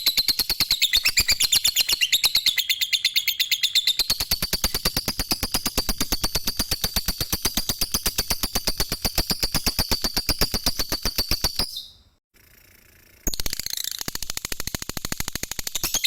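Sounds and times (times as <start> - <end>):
lovebird chattering trill: 0.0 - 12.0.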